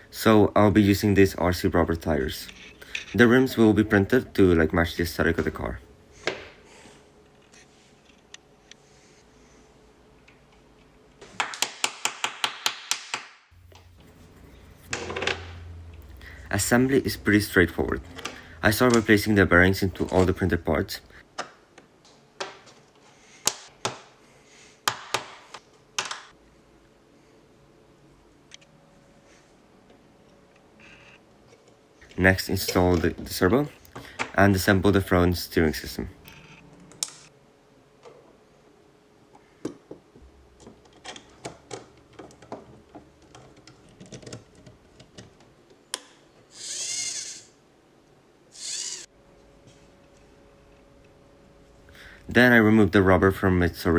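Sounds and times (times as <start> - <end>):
plastic parts clicking and knocking: 40.6 - 46.2
ball bearings clicking into plastic: 46.5 - 47.6, 48.6 - 49.1
small electric motor whirring: 46.5 - 47.6, 48.5 - 49.1.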